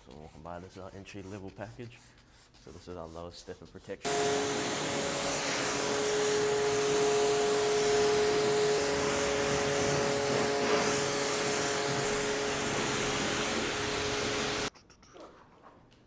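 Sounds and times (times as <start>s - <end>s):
electric motor whining: 4.1s - 14.7s
loud hiss: 4.1s - 14.7s.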